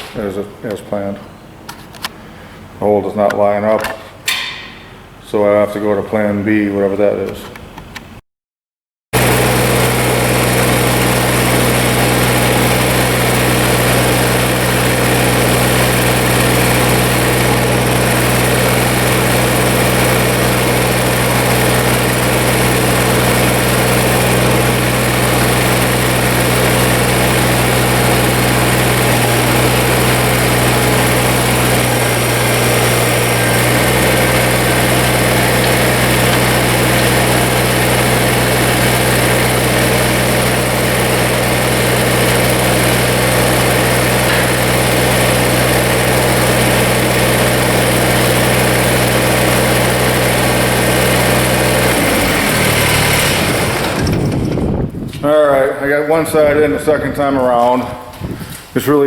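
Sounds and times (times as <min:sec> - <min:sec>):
tractor diesel engine idling: 0:09.2 - 0:54.7.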